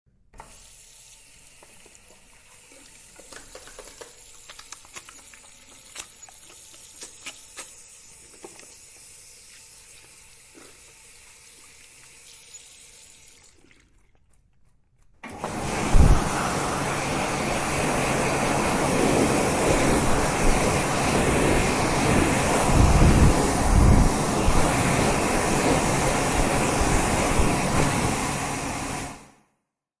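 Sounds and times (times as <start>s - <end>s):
tap water running into a sink: 0.4s - 14.3s
hands washed under running water: 0.5s - 14.6s, 15.3s - 29.2s.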